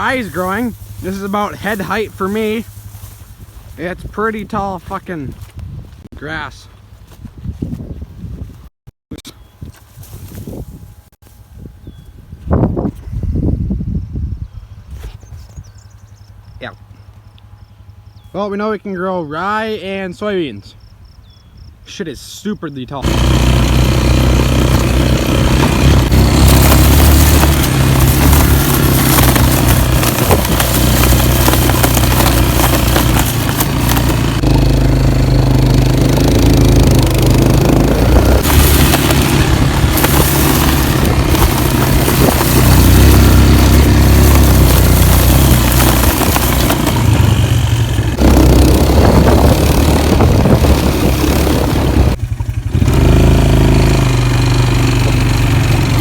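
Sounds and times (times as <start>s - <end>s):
atv engine running: 0.0s - 5.8s, 15.6s - 18.4s, 23.0s - 56.0s.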